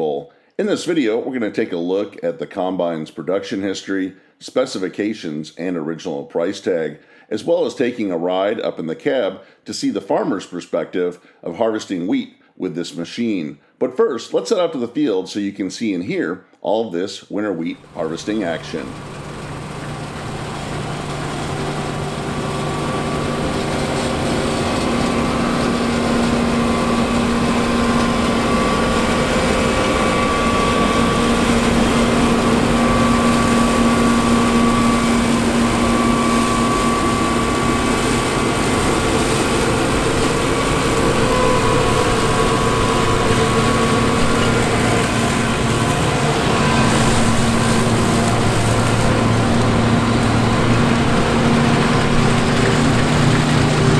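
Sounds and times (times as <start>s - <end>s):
combine harvester diesel engine: 17.8s - 53.9s.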